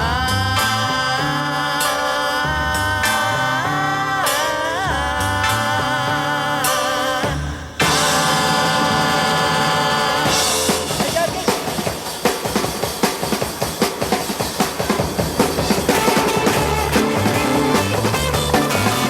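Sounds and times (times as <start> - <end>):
drum kit fast beat: 6.6 - 19.0
rock band held chord: 6.6 - 19.0.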